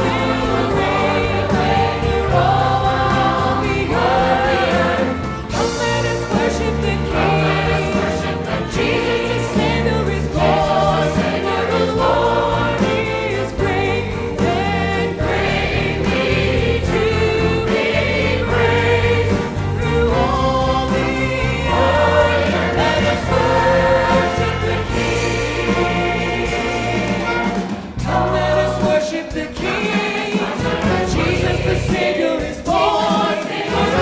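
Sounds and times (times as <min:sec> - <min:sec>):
choir singing: 0:00.0 - 0:34.0
instrumental accompaniment: 0:00.0 - 0:34.0.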